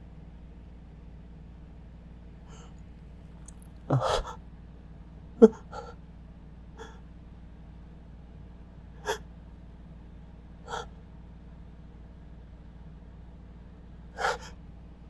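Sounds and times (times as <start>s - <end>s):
faint breaths: 2.5s - 2.9s, 3.5s - 4.4s, 5.4s - 6.0s, 6.8s - 7.0s, 10.7s - 11.0s, 14.2s - 14.6s
person gasping before sneeze: 3.9s - 4.4s, 10.7s - 10.9s, 14.2s - 14.5s
sharp catch of breath: 3.9s - 4.4s, 10.7s - 10.9s, 14.2s - 14.5s.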